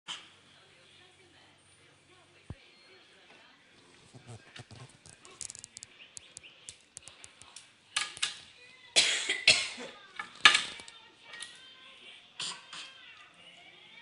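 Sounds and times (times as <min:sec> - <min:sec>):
toddler coughing: 0:09.0 - 0:10.0, 0:12.4 - 0:13.0.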